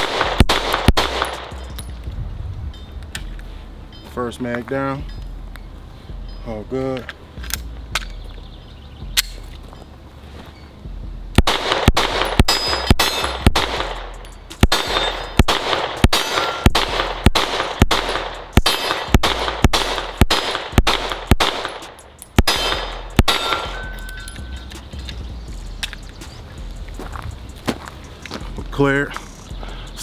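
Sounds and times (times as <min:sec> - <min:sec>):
pistol shots: 0:00.0 - 0:01.6, 0:11.4 - 0:24.4
steel targets ringing: 0:12.0 - 0:24.7.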